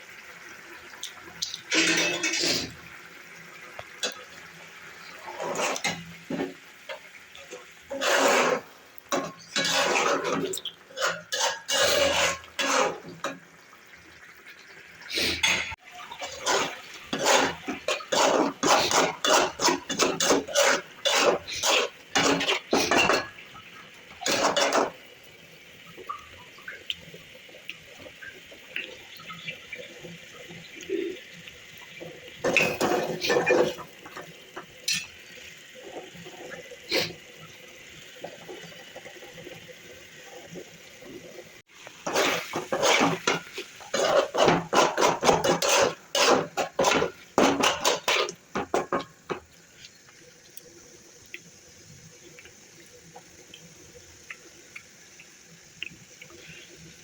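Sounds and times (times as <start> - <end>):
metal utensil scraping a pot: 1.7 - 2.8, 5.1 - 6.6, 7.9 - 13.4, 15.4 - 23.4, 24.2 - 24.9, 34.9 - 35.1, 42.0 - 49.4.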